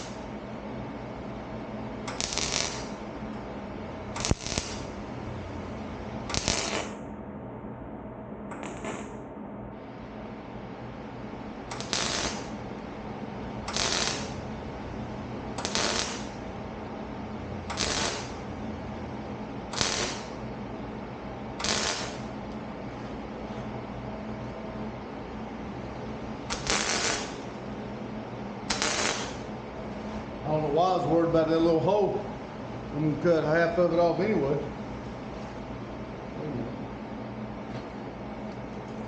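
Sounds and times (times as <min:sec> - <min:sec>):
arc welding bursts: 0:00.0 - 0:00.3, 0:02.1 - 0:03.0, 0:04.1 - 0:05.0, 0:06.2 - 0:07.0, 0:08.6 - 0:09.1, 0:11.6 - 0:12.7, 0:13.6 - 0:14.7, 0:15.5 - 0:16.4, 0:17.5 - 0:18.5, 0:19.7 - 0:20.4, 0:21.5 - 0:22.4, 0:26.5 - 0:27.5, 0:28.7 - 0:29.5
low hum: 0:00.0 - 0:39.0.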